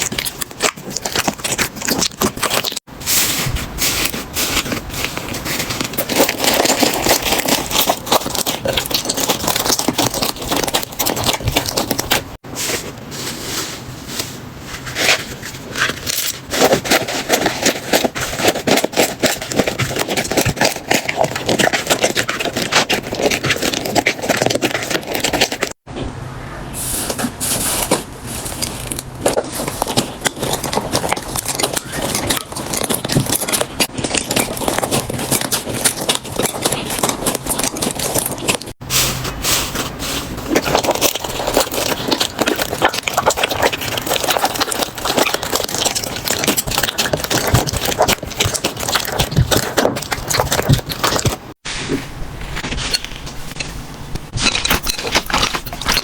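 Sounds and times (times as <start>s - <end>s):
slime squeezed crackling and popping: 4.0s - 12.4s, 28.4s - 38.8s, 40.3s - 51.6s.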